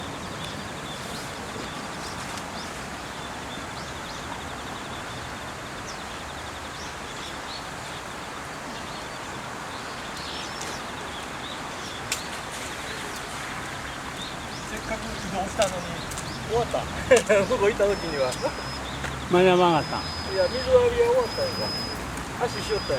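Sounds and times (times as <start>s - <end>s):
rushing outdoor background noise: 0.0s - 22.9s
short high bird calls: 12.8s - 22.9s.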